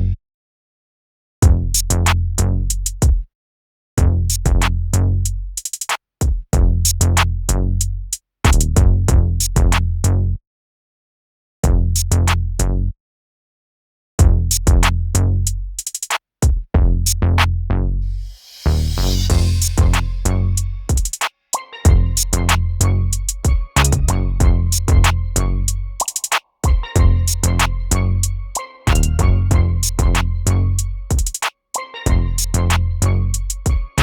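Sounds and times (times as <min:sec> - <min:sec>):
rapid repeated drum hits: 0:01.4 - 0:01.6, 0:02.9 - 0:03.3, 0:05.6 - 0:06.7, 0:08.5 - 0:09.8, 0:14.2 - 0:14.9, 0:15.8 - 0:16.9, 0:20.9 - 0:21.3, 0:23.3 - 0:25.2, 0:26.0 - 0:27.2, 0:28.6 - 0:30.2, 0:31.1 - 0:31.5, 0:33.6 - 0:34.0
electronic bass music: 0:19.0 - 0:21.0, 0:21.9 - 0:31.4, 0:32.1 - 0:34.0.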